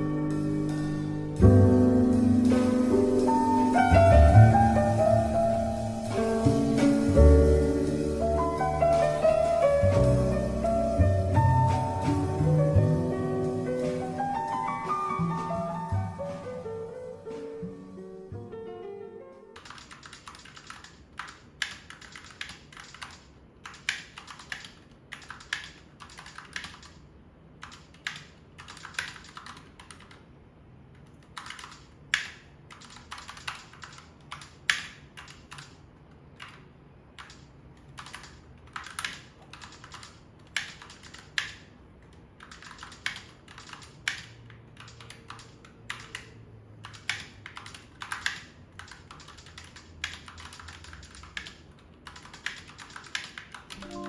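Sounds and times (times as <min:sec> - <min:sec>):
typing on mechanical keyboard: 0:19.6 - 0:30.3, 0:30.9 - 0:54.0.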